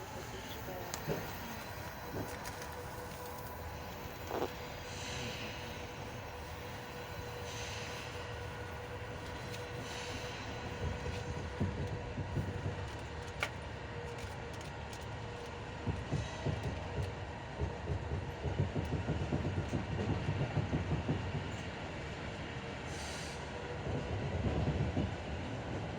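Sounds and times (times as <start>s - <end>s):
train running hum: 0.0s - 25.9s.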